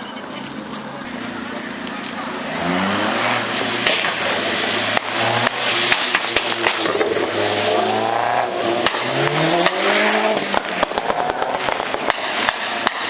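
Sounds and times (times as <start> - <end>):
car engine revving: 0.2 - 13.0
sharp cracks: 3.5 - 7.5, 8.8 - 13.0.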